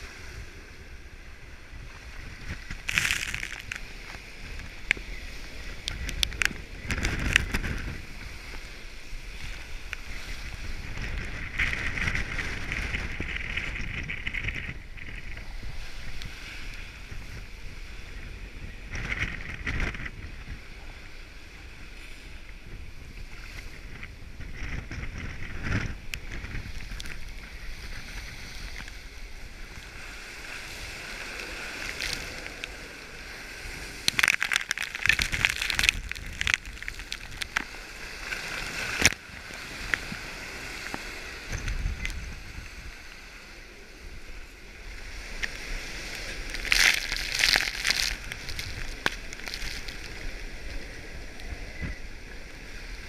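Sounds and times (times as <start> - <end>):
wind rushing over microphone: 0.0 - 53.0
water sloshing and splashing: 2.2 - 5.0, 30.6 - 41.7, 45.5 - 50.4.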